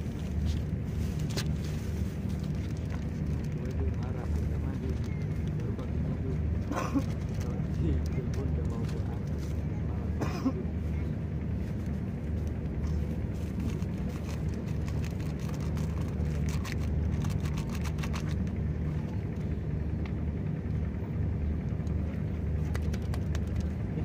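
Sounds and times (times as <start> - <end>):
engine droning steadily: 0.0 - 24.0.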